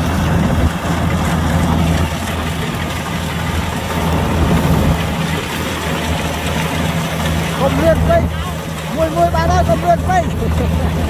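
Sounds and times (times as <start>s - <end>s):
diesel engine running: 0.0s - 11.0s.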